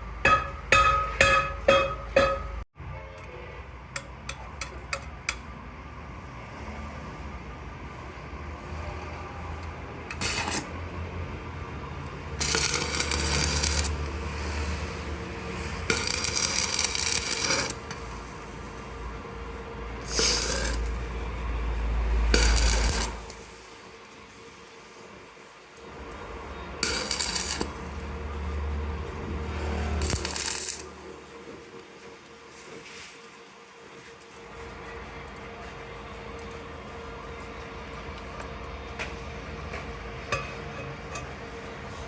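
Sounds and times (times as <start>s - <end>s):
metal clinking and scraping: 12.4s - 14.1s, 15.9s - 18.4s, 20.0s - 21.0s, 22.4s - 23.4s, 26.8s - 27.7s, 30.0s - 30.9s.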